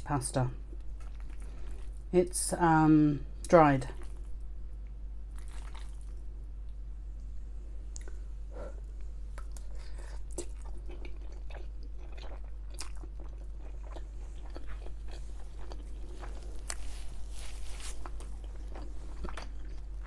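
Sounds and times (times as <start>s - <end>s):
close chewing with wet mouth clicks: 9.4s - 16.8s, 18.2s - 20.0s.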